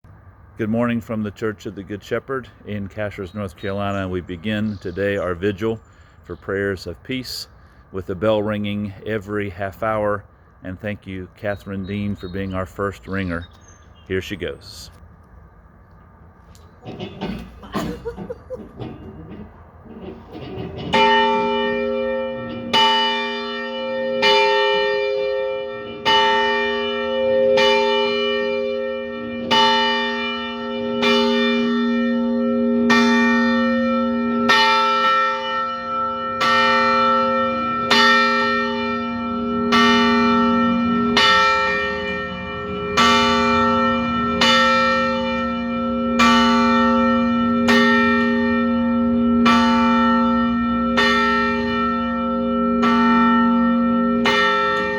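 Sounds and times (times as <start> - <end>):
church bell tolling: 16.8 - 54.9.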